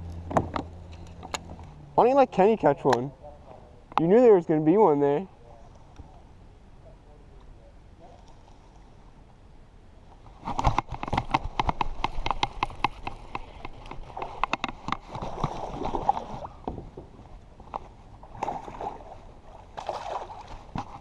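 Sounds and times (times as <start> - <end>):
water sloshing: 10.3 - 21.0
sharp clicks and knocks: 10.5 - 15.5.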